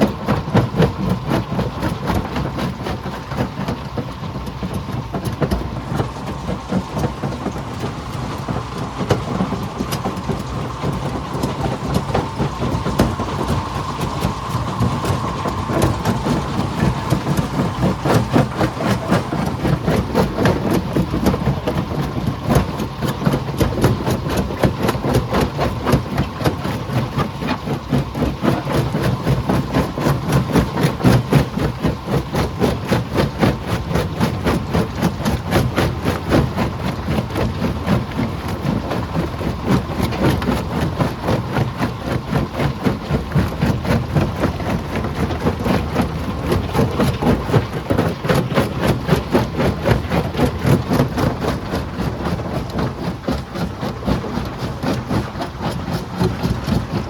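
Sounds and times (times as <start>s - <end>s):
engine drone: 0.0s - 57.0s.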